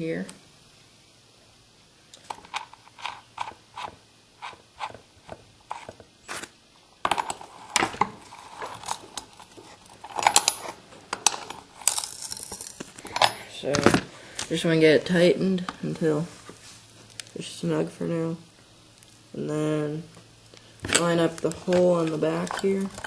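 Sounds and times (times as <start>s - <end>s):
metal clinks and scrapes: 7.1s - 13.4s.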